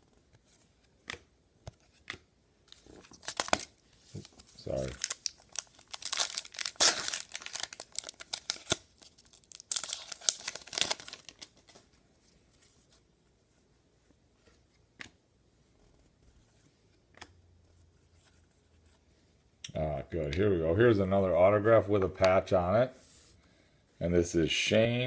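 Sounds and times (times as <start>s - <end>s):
foil wrapper tearing and crinkling: 3.0s - 3.7s, 4.7s - 11.7s.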